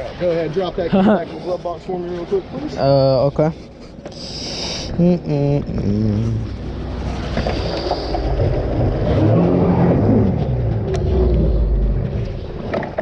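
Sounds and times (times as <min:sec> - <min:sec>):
jet ski engine running: 0:04.2 - 0:12.5.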